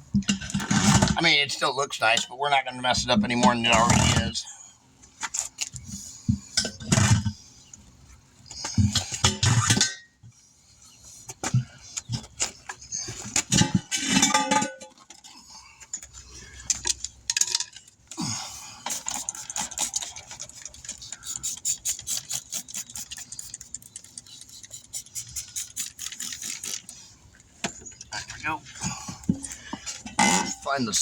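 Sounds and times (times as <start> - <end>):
metal tools clinking and scraping: 8.6 - 10.2, 12.0 - 31.0.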